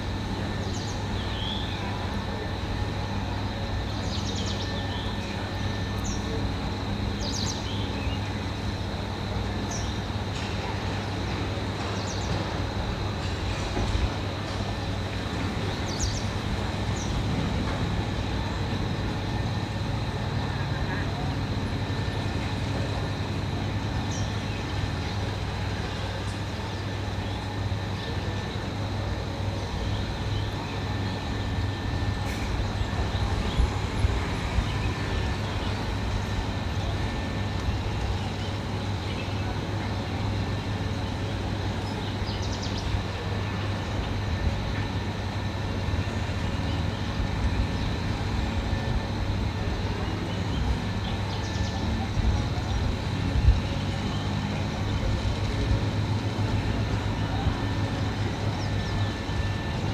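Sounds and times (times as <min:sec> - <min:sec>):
heavy machine engine running: 0:08.5 - 0:27.5, 0:28.2 - 0:39.0.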